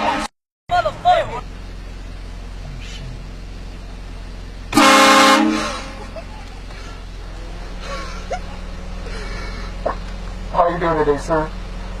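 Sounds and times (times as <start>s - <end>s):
steady low hum: 0.7s - 12.0s
train horn chord blast: 4.7s - 6.0s.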